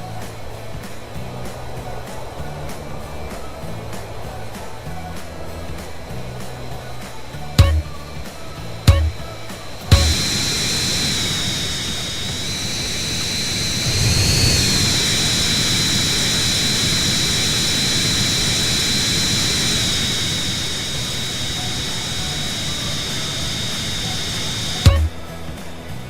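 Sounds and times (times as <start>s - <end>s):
jet engines whining: 7.1s - 25.2s.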